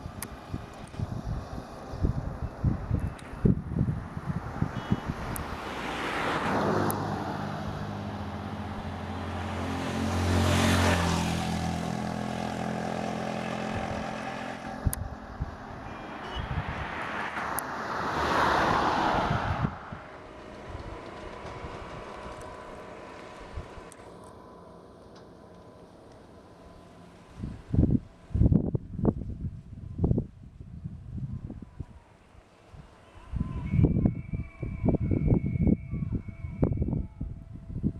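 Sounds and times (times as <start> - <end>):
wind buffeting microphone: 0.0 - 8.0, 12.0 - 17.2, 18.5 - 23.9, 27.3 - 37.9
vehicles passing by: 0.0 - 37.9
low engine drone: 6.4 - 16.2, 19.7 - 28.9.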